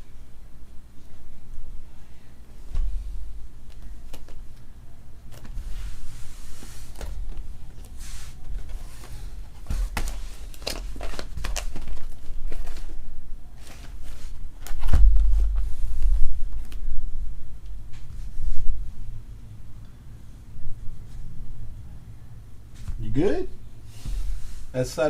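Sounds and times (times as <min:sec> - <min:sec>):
trading cards rustling: 0:06.8 - 0:13.0
heavy low thump: 0:14.9 - 0:16.3.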